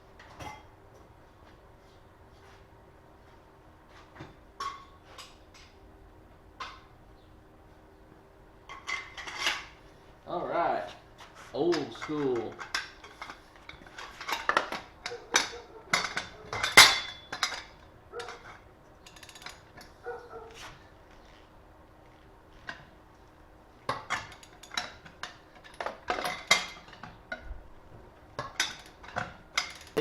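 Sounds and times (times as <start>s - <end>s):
lug wrench clanking on lug nuts: 11.7s - 20.0s, 23.9s - 27.6s, 28.4s - 30.0s.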